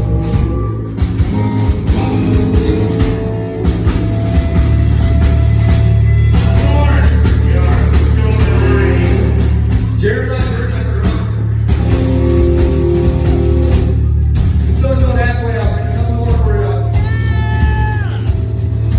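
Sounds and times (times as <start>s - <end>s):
live rock band: 0.0s - 18.9s
person singing: 6.3s - 11.2s.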